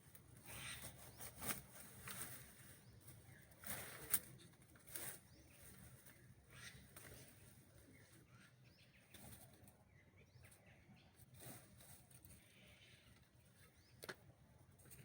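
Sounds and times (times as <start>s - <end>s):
soft rustles and ticks: 0.0s - 8.2s, 11.2s - 15.0s.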